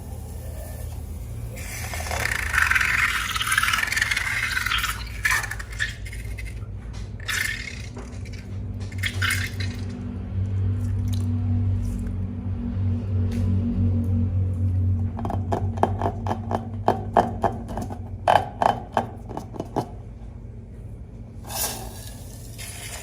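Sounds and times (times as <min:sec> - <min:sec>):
steady low hum: 0:00.0 - 0:23.0
slime pouring and scraping: 0:21.5 - 0:23.0.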